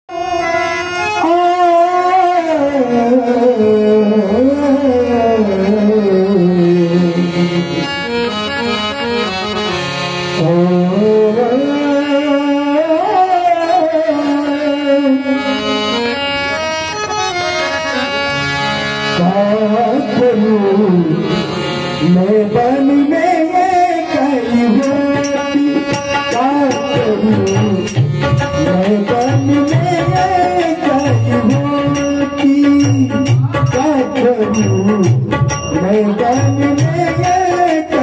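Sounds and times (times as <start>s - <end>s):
harmonium: 0.1s - 38.0s
tabla: 0.1s - 38.0s
person singing gliding melody: 22.0s - 38.0s.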